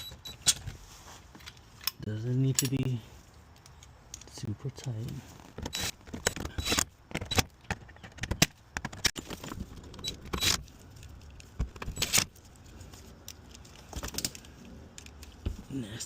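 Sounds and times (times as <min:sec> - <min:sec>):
metal parts and tools clinking: 0:00.0 - 0:00.8, 0:01.4 - 0:08.5.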